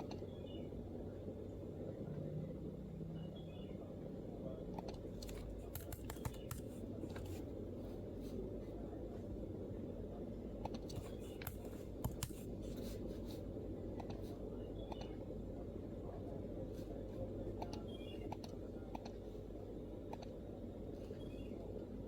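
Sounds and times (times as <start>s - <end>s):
low background hum: 0.0s - 22.0s
laptop keyboard typing: 5.2s - 7.4s, 10.7s - 12.9s.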